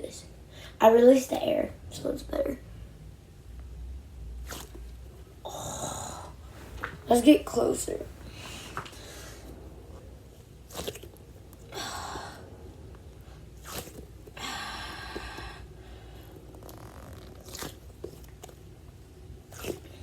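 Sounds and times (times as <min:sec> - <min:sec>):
squishy toy scrunching: 0:16.3 - 0:18.6.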